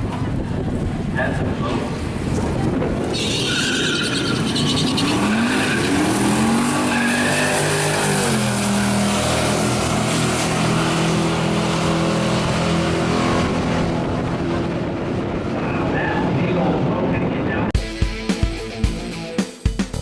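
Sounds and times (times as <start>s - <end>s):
racing car engine accelerating: 3.2s - 15.6s.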